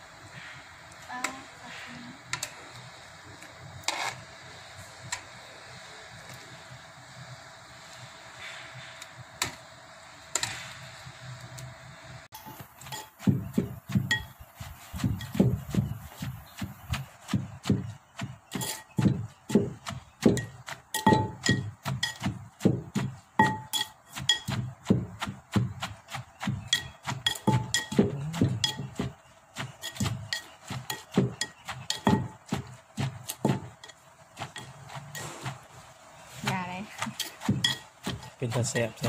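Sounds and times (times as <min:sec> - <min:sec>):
pestle pounding in mortar: 0:12.4 - 0:35.8, 0:36.4 - 0:39.0.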